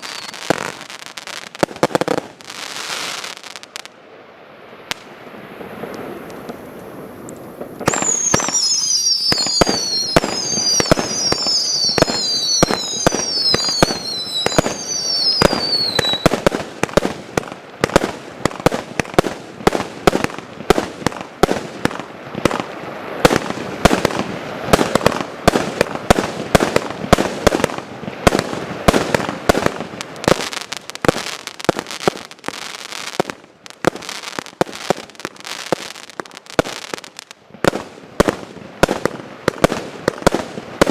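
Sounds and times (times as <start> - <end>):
falling firework whistles: 0.0 - 3.7, 7.6 - 17.1
firework bangs and crackles: 0.0 - 40.9.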